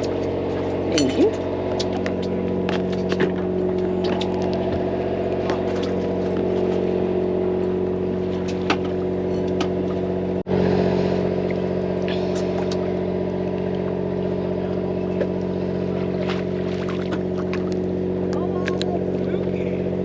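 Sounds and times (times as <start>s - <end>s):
boat engine running: 0.0s - 20.0s.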